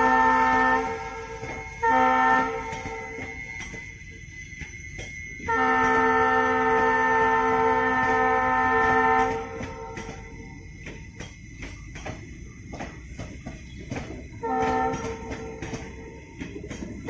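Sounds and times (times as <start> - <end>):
locomotive air horn blast: 0.0 - 1.2, 1.8 - 3.0, 5.5 - 10.0, 14.4 - 15.5.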